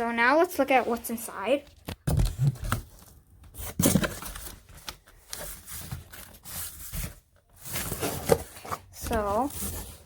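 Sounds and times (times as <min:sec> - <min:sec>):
cardboard packaging being opened: 0:02.0 - 0:10.0.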